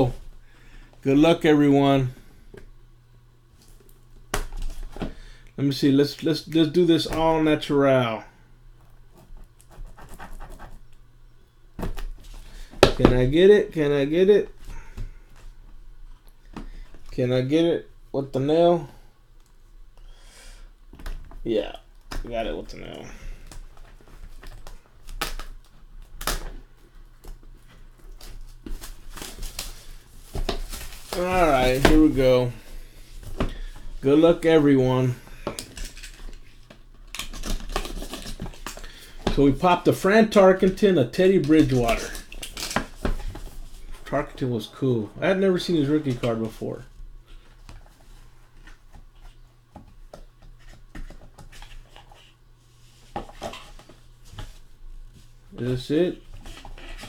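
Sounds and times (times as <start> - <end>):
low electrical hum: 0.0 - 57.0
trading cards clicking and rustling: 22.1 - 44.5.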